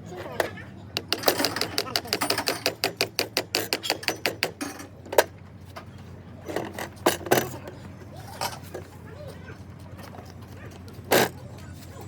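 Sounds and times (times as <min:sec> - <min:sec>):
fast sharp clicks of hand tool: 0:01.0 - 0:04.7.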